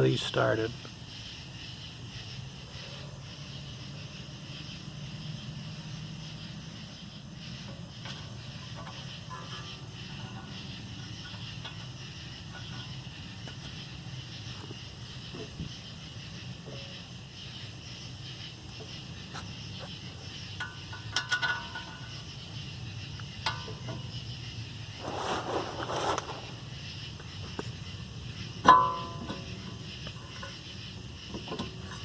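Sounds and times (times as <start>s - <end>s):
steady low hum: 0.0s - 32.0s
small metallic clinks: 19.8s - 24.2s, 28.6s - 32.0s
rustling scrape: 24.9s - 26.7s.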